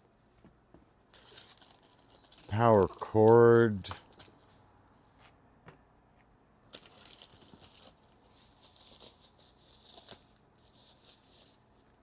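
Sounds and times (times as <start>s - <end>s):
packaging rustling and crinkling: 6.7s - 12.0s.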